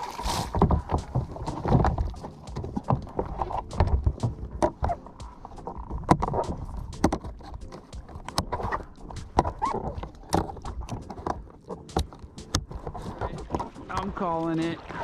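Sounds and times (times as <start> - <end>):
knocks and clicks on plastic kayak: 0.4 - 14.8.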